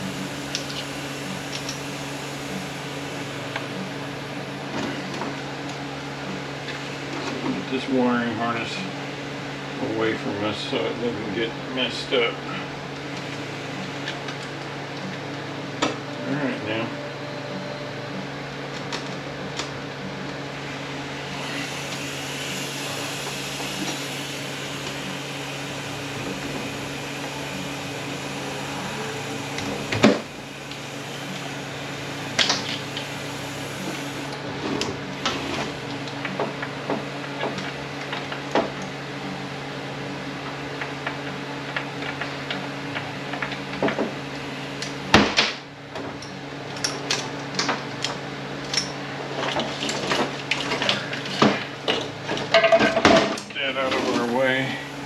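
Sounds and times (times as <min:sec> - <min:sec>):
steady background hum: 0:00.0 - 0:55.0.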